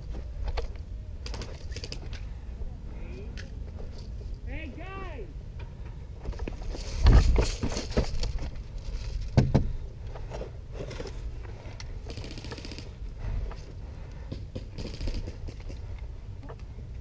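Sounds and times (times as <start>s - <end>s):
rustling and scraping of gear: 5.8s - 9.4s, 10.0s - 17.0s.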